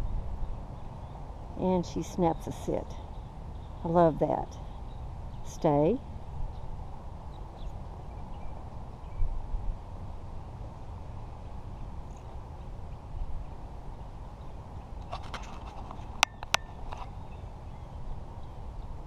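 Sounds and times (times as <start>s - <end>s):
low outdoor rumble: 0.0s - 19.0s.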